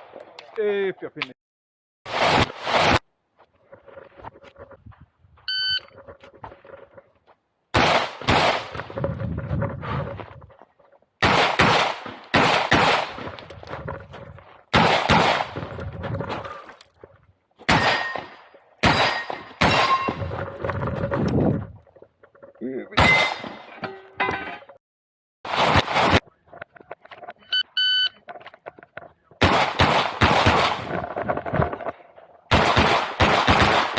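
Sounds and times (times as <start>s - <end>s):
pistol shots echoing: 7.8s - 8.7s, 11.2s - 13.3s, 14.7s - 15.6s, 17.7s - 20.2s, 29.4s - 30.8s, 32.5s - 33.9s.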